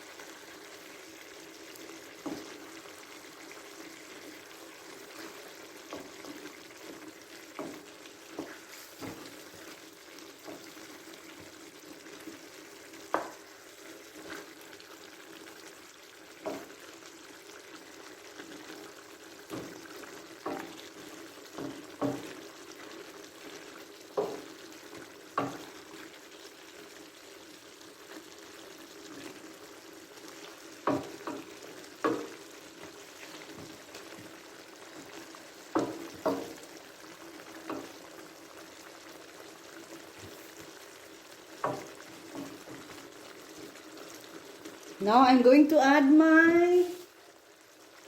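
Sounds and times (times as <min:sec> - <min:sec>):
food sizzling in a pan: 0:00.0 - 0:48.0
spatula knocking against pan: 0:13.1 - 0:13.4, 0:20.4 - 0:20.9, 0:21.5 - 0:22.4, 0:24.2 - 0:24.5, 0:25.4 - 0:25.7, 0:30.8 - 0:32.4, 0:35.7 - 0:36.6, 0:41.6 - 0:42.8.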